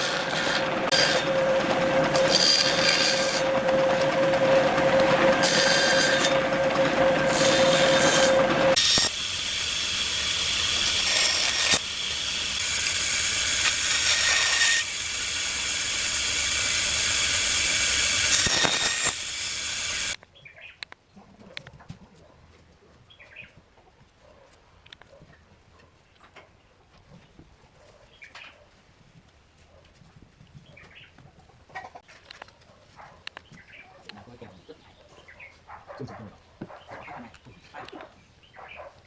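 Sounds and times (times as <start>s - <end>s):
power tool whining on wood: 0.0s - 20.2s.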